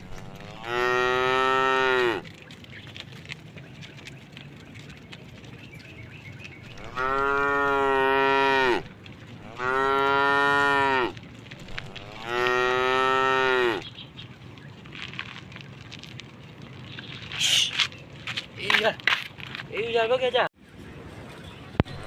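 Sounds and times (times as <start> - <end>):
cow mooing: 0.0 - 2.2, 6.8 - 13.8.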